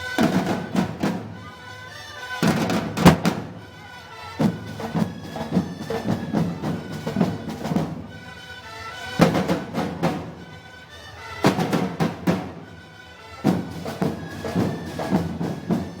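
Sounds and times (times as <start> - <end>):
heavy drum strikes: 2.4 - 3.5.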